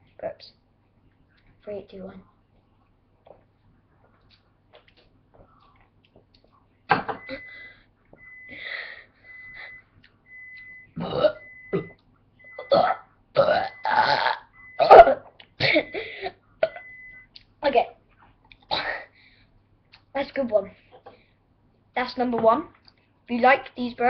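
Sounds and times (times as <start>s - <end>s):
person burping loudly: 11.0s - 12.0s, 12.6s - 16.8s.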